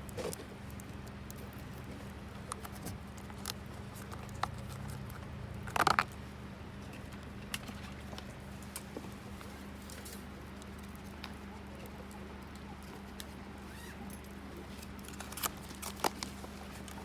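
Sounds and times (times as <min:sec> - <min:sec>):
campfire crackling and popping: 0:00.0 - 0:06.3
low background hum: 0:00.0 - 0:17.0.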